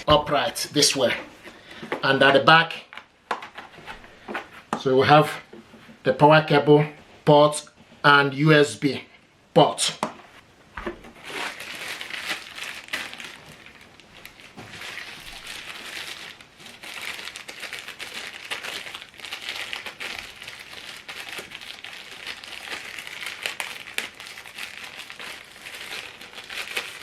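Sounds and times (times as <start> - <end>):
plastic packaging crinkling: 10.8 - 27.0.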